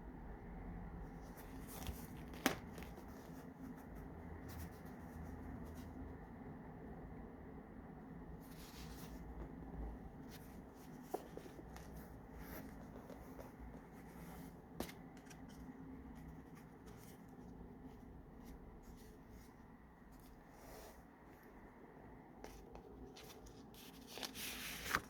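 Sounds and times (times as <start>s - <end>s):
paper pages rustling: 1.2s - 6.0s, 8.4s - 21.0s, 22.5s - 25.0s.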